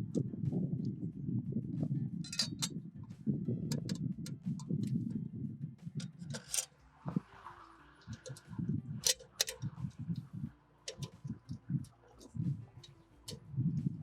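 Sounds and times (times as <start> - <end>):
plastic parts clicking and clinking: 6.0 - 6.7.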